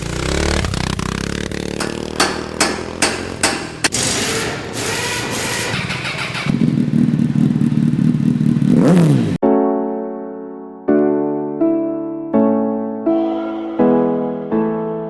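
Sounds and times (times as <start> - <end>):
two-stroke scooter engine revving: 0.0 - 9.4
piano music: 9.4 - 15.0.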